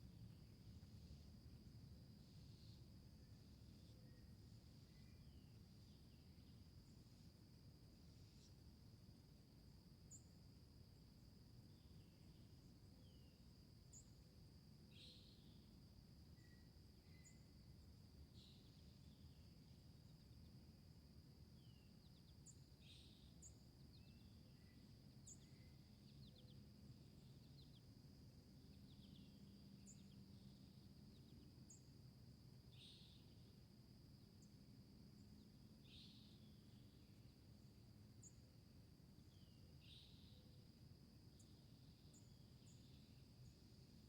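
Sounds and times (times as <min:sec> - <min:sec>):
insects trilling: 0:14.9 - 0:44.0.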